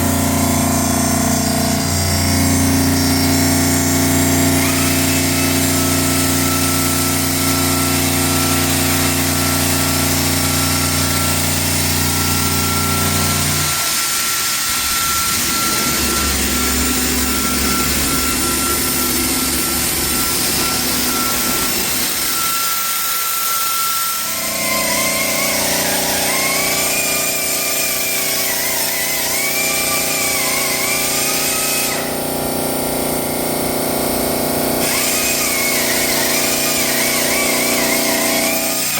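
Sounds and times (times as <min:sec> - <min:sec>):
wavering machine whine: 0:00.0 - 0:07.0, 0:12.2 - 0:23.7
waterjet saw hissing: 0:00.0 - 0:34.1.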